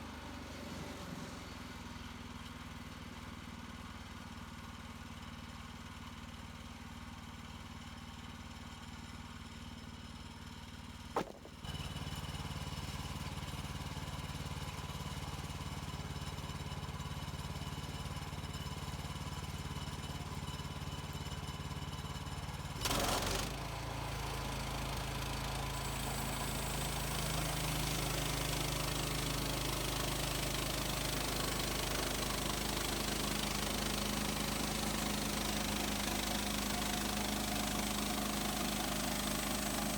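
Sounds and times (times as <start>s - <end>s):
sawmill gas engine running: 11.2s - 39.9s.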